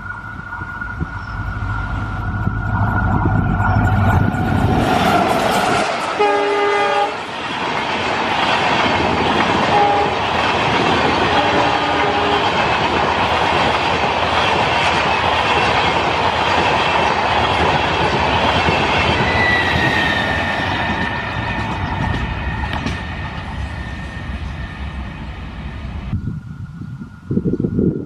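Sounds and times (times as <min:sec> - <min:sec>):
train coaches rushing and clacking: 0:00.0 - 0:26.2
locomotive horn: 0:05.7 - 0:07.2, 0:09.7 - 0:10.2, 0:11.2 - 0:12.6.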